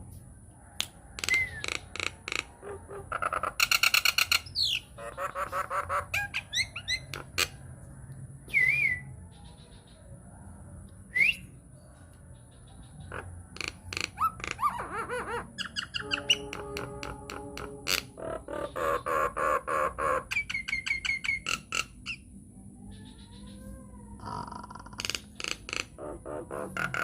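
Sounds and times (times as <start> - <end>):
myna singing whistles and clicks: 1.2 - 1.6, 11.1 - 11.5.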